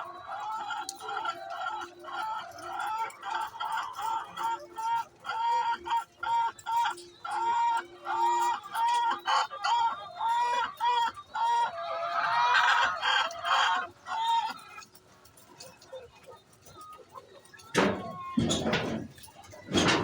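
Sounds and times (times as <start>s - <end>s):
hen clucking: 0.0s - 20.0s.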